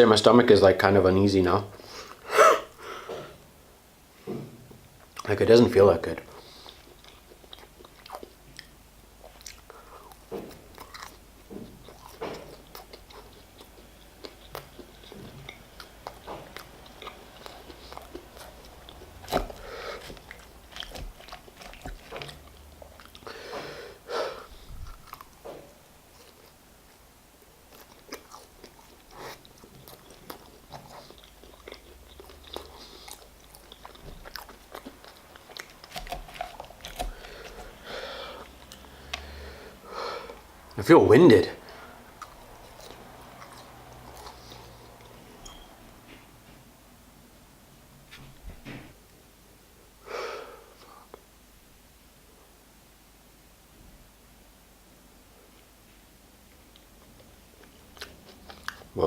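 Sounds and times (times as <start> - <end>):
chewing and biting into food: 6.3 - 40.5, 41.7 - 46.2, 56.7 - 59.0.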